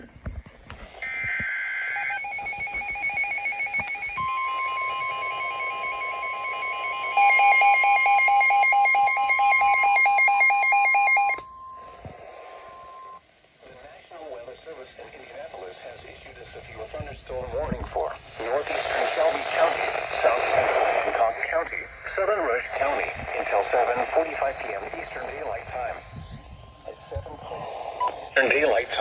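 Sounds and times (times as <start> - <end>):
steady warning alarm tone: 1.0 - 13.2, 25.0 - 28.4.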